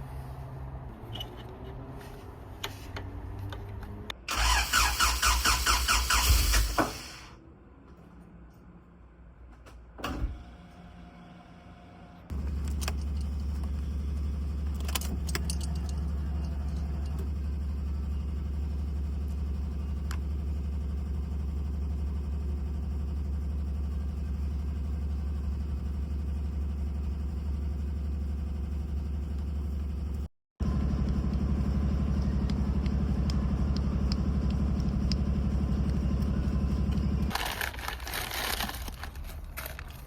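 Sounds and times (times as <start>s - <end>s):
car engine running: 12.3s - 40.0s.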